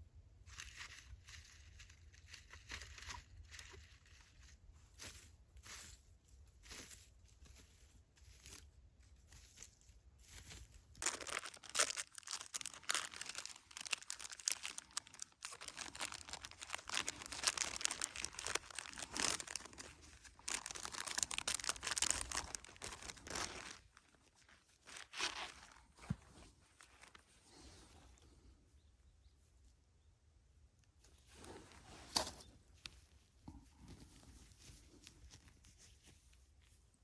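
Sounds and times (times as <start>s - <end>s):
dry material crinkling and crunching: 0.5s - 28.3s.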